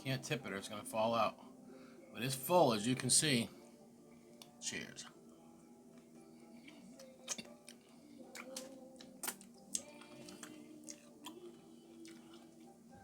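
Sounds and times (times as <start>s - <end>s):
person chewing: 6.0s - 12.8s.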